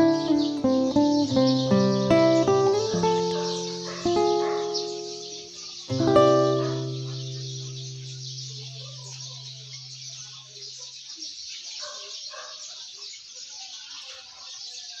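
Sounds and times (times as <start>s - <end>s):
guitar chord ringing: 0.0s - 9.7s.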